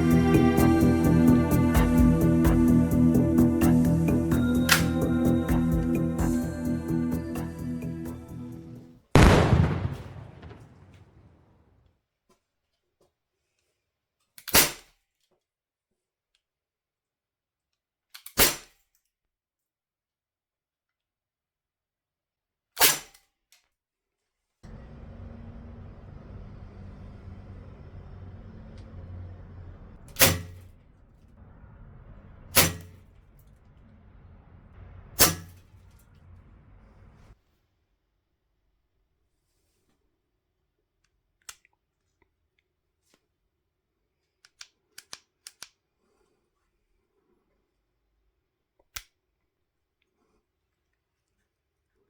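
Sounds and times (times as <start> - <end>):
airsoft pistol shots: 30.1 - 30.6, 32.6 - 32.9.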